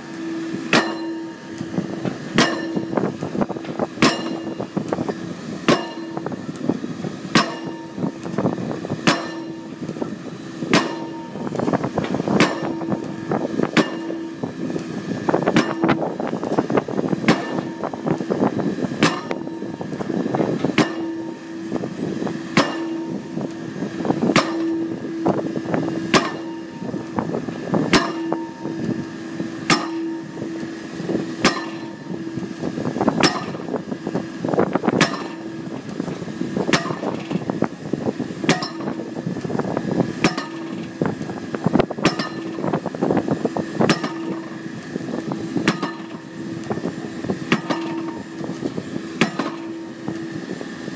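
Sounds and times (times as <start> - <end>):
machinery drone: 0.0 - 50.9
pile-driving hammer clanging: 0.7 - 1.7, 2.3 - 4.9, 5.6 - 6.3, 7.3 - 8.1, 9.0 - 9.7, 10.7 - 14.3, 15.5 - 16.0, 17.2 - 17.9, 19.0 - 21.3, 22.5 - 23.2, 24.3 - 24.9, 26.1 - 26.8, 27.9 - 28.7, 29.7 - 30.3, 31.4 - 32.0, 33.2 - 33.8, 35.0 - 35.5, 36.7 - 37.4, 38.5 - 39.0, 40.2 - 40.8, 42.0 - 42.7, 43.9 - 44.6, 45.6 - 46.3, 47.5 - 48.3, 49.2 - 49.8.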